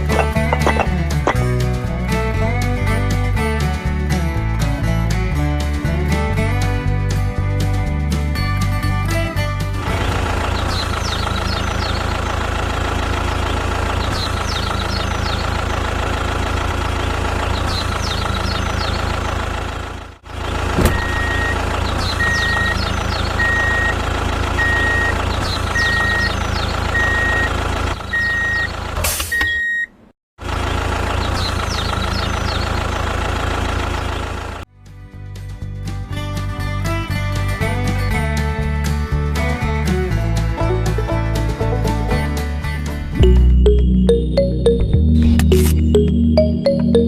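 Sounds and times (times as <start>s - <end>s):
vehicle engine running: 0.0s - 29.1s, 30.4s - 36.1s, 37.3s - 47.0s
reversing alarm beeping: 20.9s - 24.0s, 24.6s - 28.7s, 29.3s - 29.9s.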